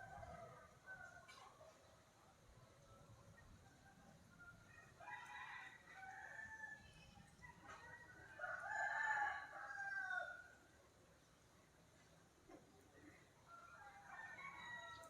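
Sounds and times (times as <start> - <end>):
rooster crowing: 4.8 - 6.8, 7.7 - 10.6, 13.7 - 15.0.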